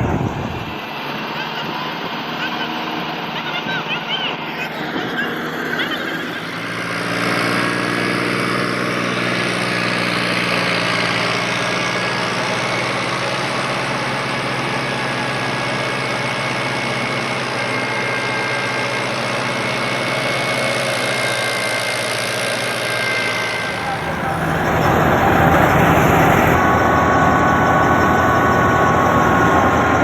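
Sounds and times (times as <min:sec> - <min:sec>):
farm machinery engine running: 0:00.0 - 0:30.0
thin high whine: 0:22.6 - 0:30.0.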